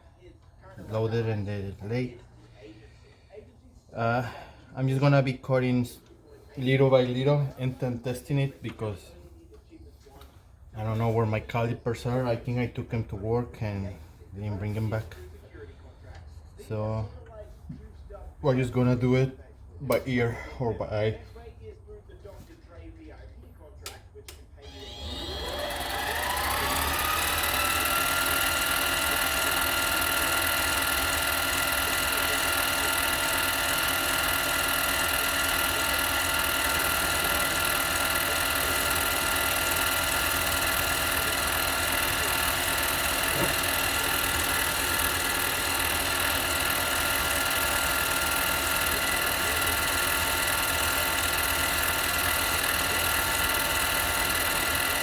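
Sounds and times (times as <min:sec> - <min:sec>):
lathe motor whining: 0:24.3 - 0:55.0.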